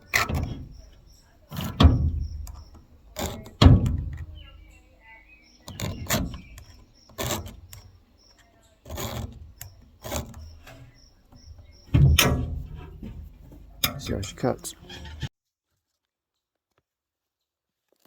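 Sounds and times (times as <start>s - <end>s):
short knocks and rattles: 0.0s - 4.8s, 5.6s - 7.9s, 8.8s - 15.3s.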